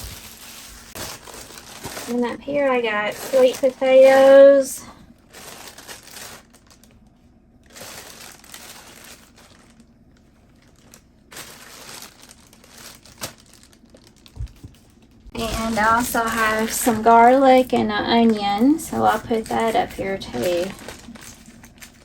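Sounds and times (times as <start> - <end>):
bag crinkling and rustling: 0.0 - 22.0.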